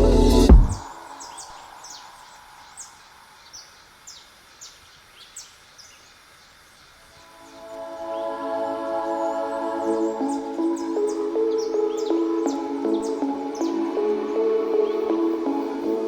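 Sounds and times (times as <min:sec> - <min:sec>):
music: 0:00.0 - 0:00.9, 0:07.3 - 0:16.0
small birds chirping: 0:00.7 - 0:08.4, 0:09.0 - 0:16.0
faint steady hiss: 0:00.8 - 0:16.0.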